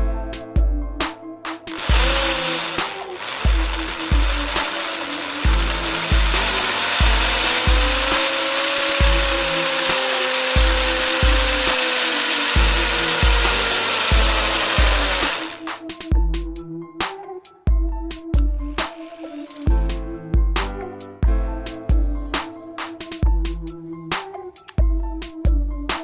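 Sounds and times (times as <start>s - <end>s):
hammer drill whining: 1.7s - 15.8s, 18.8s - 19.7s
background music with bass beat: 15.8s - 26.0s.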